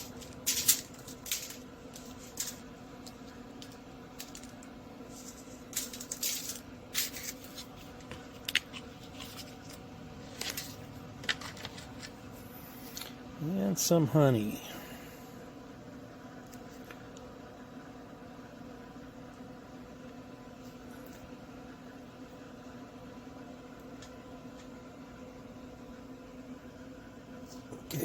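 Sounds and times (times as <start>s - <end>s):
clicks and rustles of handling food: 0.0s - 12.3s
steady low hum: 0.0s - 28.0s.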